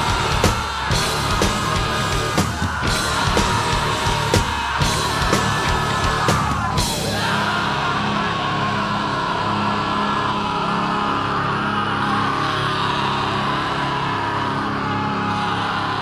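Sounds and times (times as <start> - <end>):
drum hits: 0.0 - 7.2
distorted guitars: 0.0 - 8.4.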